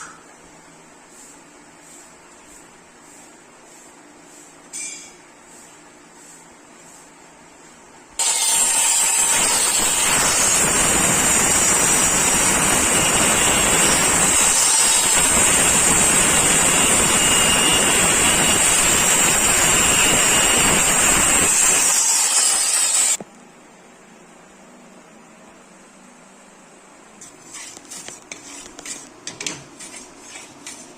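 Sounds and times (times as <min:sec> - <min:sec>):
power tool running: 0:08.2 - 0:23.2.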